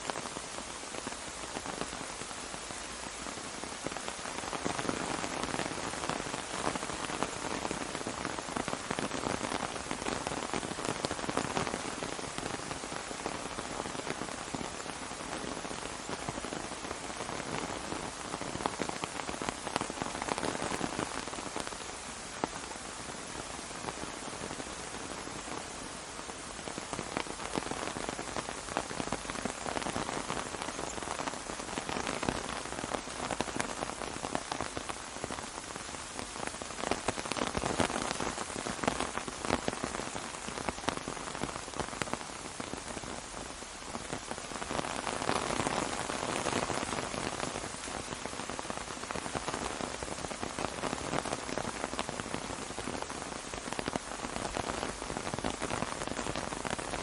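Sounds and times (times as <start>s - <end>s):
rain pattering on an umbrella: 0.0s - 57.0s.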